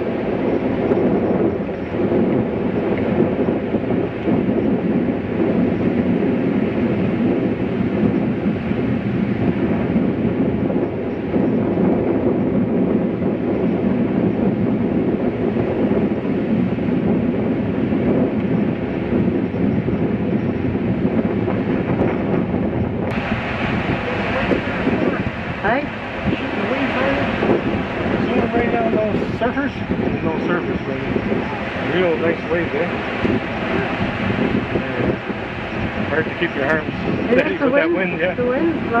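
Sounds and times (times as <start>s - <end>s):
wind buffeting microphone: 0.0s - 39.0s.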